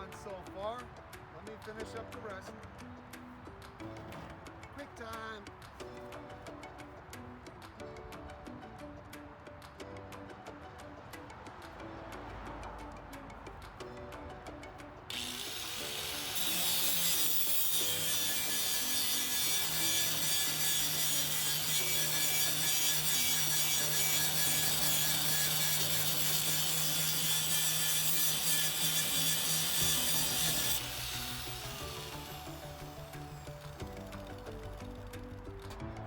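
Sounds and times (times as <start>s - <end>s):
background music: 0.0s - 36.0s
power tool hissing on sheet metal: 15.1s - 34.8s.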